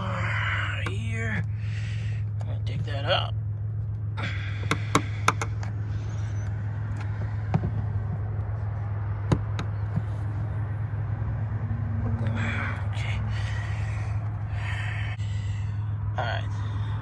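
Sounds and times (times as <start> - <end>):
steady low hum: 0.0 - 17.0
sharp clicks and knocks of parts: 3.7 - 5.8, 9.2 - 10.3.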